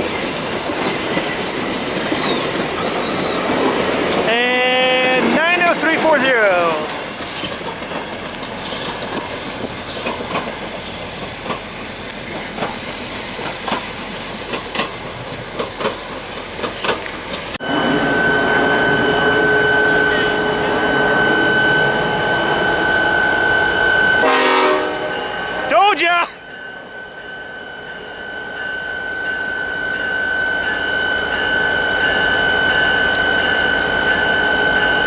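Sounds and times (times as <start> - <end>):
train wheels clicking over rail joints: 0.0 - 4.4, 5.0 - 17.6.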